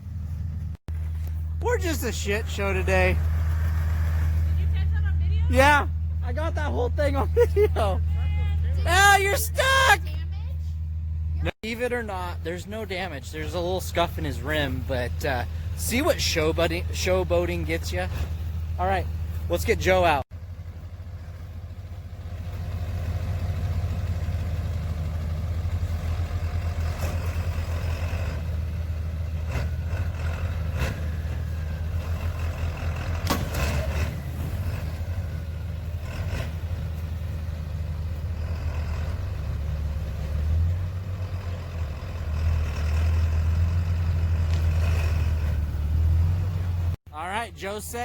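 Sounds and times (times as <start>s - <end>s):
pickup truck engine idling: 0.0s - 26.8s.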